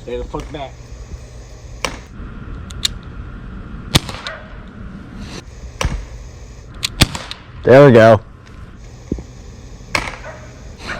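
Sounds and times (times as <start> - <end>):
bb pistol pops: 1.8 - 2.1, 3.9 - 4.4, 5.8 - 6.1, 6.8 - 7.4, 9.9 - 10.2.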